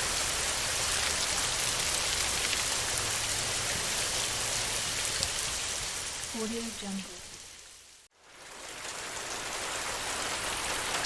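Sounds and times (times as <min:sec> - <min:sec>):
heavy rain on a metal roof: 0:00.0 - 0:11.0
raindrop ticks: 0:05.0 - 0:07.0.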